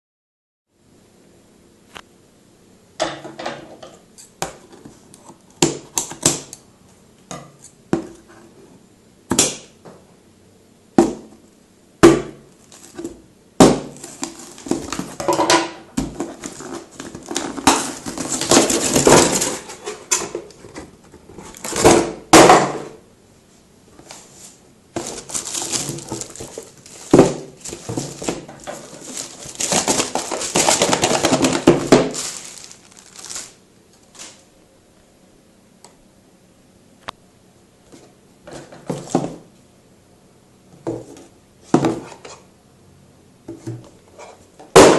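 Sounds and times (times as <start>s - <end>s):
packaging rustling: 12.5s - 13.1s, 13.9s - 15.4s, 16.1s - 21.9s, 25.0s - 34.5s.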